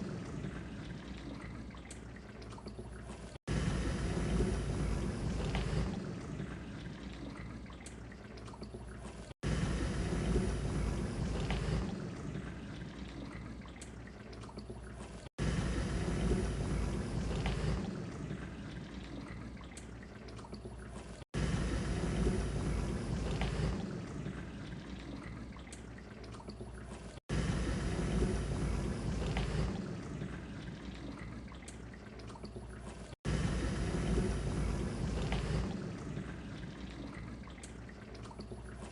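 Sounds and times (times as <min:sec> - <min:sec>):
water splashing: 0:00.0 - 0:38.9
dishwasher running: 0:03.5 - 0:07.6, 0:09.0 - 0:13.5, 0:15.4 - 0:19.4, 0:21.4 - 0:24.8, 0:27.5 - 0:31.3, 0:33.2 - 0:37.2.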